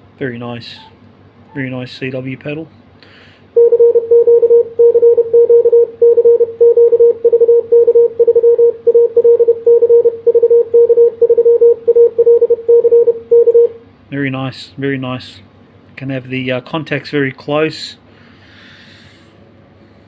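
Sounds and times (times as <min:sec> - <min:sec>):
morse code beeps: 0:00.8 - 0:01.8, 0:03.6 - 0:13.7.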